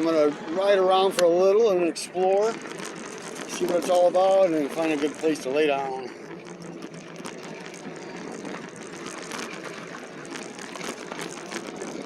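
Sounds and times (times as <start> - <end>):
bike tyres on bumpy trail: 0.0 - 12.0
bike rattles and knocks: 2.2 - 12.0.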